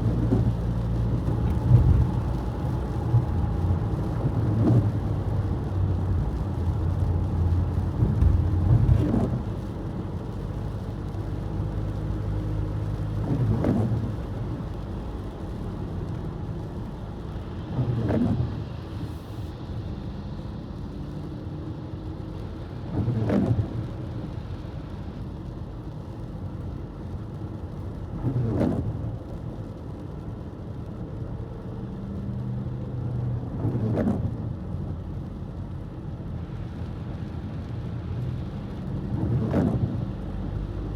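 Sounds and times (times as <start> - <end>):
windshield wipers swishing: 0.0 - 5.5
car engine and tyres on wet road: 0.0 - 40.9.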